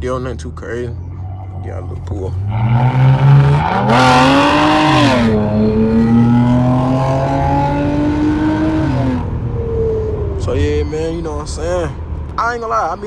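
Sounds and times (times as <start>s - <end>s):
car engine accelerating hard: 1.2s - 10.8s.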